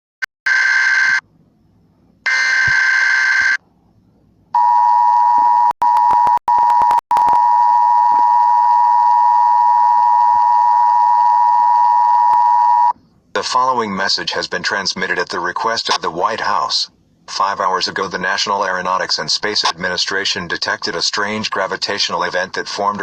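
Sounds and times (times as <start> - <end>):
digital data bursts: 2.3 - 3.6.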